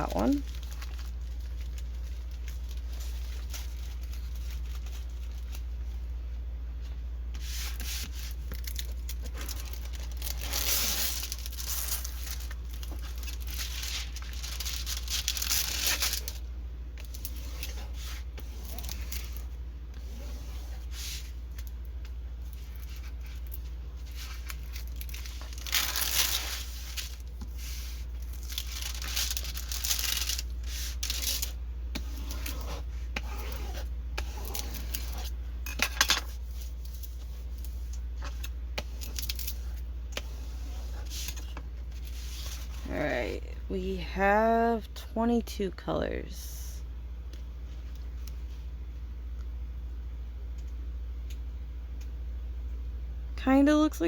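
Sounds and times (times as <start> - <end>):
plastic packaging crinkling: 0.0 - 6.0, 7.6 - 19.6, 21.5 - 33.8, 34.4 - 39.9.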